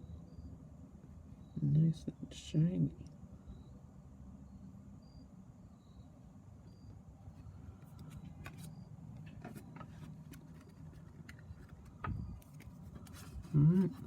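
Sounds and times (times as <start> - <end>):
low steady hum: 0.0 - 14.0
trading cards handled: 7.4 - 14.0.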